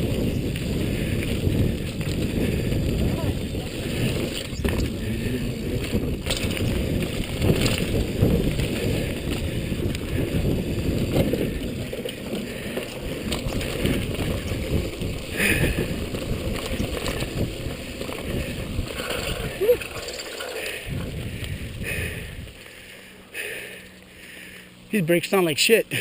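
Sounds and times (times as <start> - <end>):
wind buffeting microphone: 0.0 - 22.6
mountain bike rolling over dirt: 0.0 - 24.6
bike rattling over bumps: 0.0 - 25.4.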